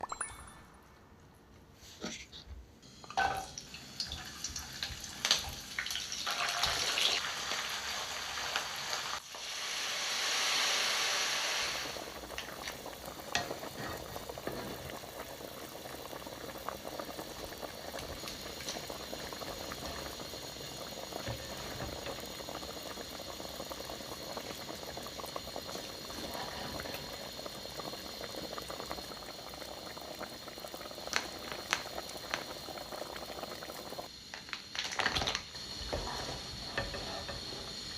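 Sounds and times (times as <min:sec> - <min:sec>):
pot boiling with bubbling: 0:03.0 - 0:37.9
loud hiss: 0:06.8 - 0:12.2.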